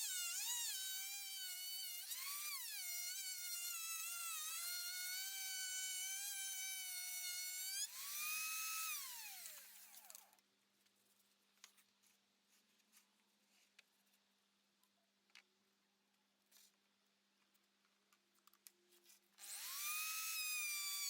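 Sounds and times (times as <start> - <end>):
electric motor high-pitched whine: 19.4 - 21.0.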